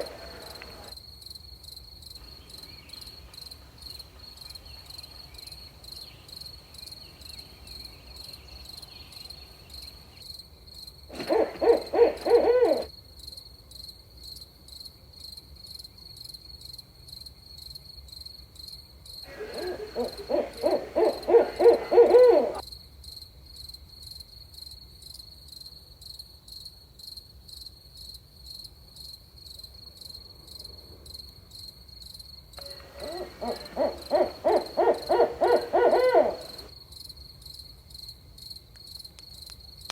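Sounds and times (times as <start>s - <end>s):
insects trilling: 0.0s - 0.9s, 11.2s - 12.9s, 19.3s - 22.6s, 32.6s - 36.7s
owl hooting: 0.0s - 0.9s, 11.1s - 12.9s, 19.3s - 22.6s, 32.6s - 36.7s.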